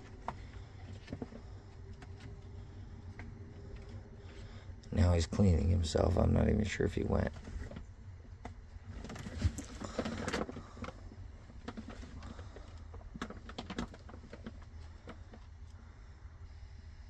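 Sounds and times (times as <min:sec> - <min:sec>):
steady low rumble: 0:00.0 - 0:17.0
light clicks and rustles: 0:07.3 - 0:15.8.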